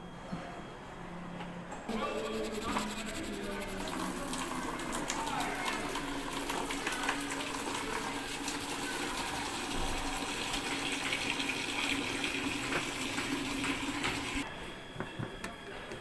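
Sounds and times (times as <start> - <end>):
steady machine hum: 0.0 - 15.0
water rushing in washing machine: 1.9 - 14.5.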